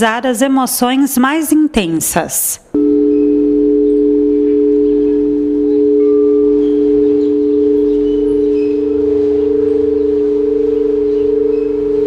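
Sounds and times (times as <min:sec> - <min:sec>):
crystal singing bowls ringing: 0:02.8 - 0:12.0.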